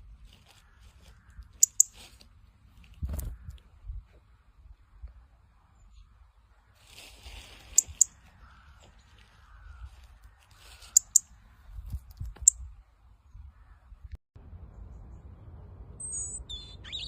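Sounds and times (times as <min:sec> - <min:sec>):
robin chipping: 0:01.2 - 0:02.1, 0:07.6 - 0:11.4, 0:16.0 - 0:17.0.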